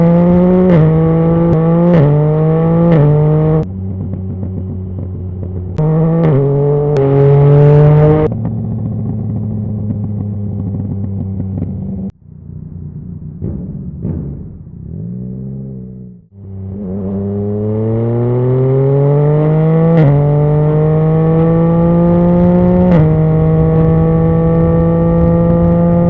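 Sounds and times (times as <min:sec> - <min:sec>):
motorcycle engine accelerating hard: 0:00.0 - 0:26.0
exhaust crackles and pops: 0:00.3 - 0:15.0, 0:21.3 - 0:26.0.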